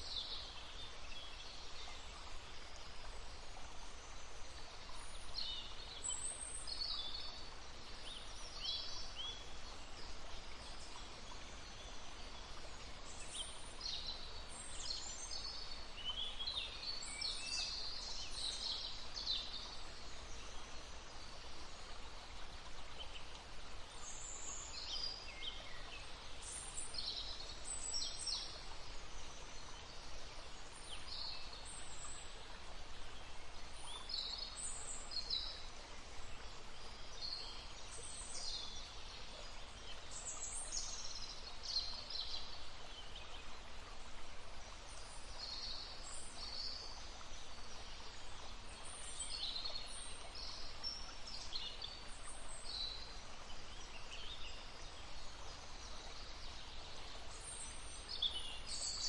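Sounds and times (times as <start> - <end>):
babbling stream: 0.0 - 59.0.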